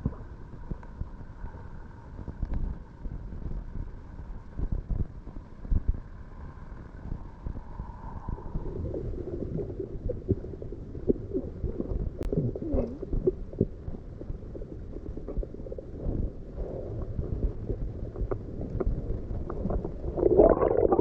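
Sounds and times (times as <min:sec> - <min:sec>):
muffled underwater rumble: 0:00.0 - 0:21.0
water gurgling: 0:07.4 - 0:21.0.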